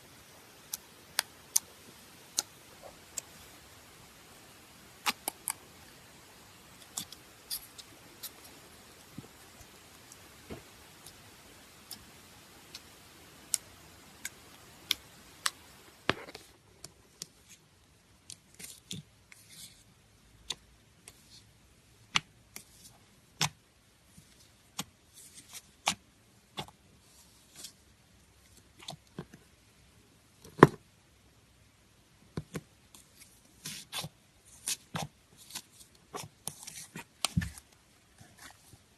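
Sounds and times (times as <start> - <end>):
faint hiss: 0.0 - 20.2.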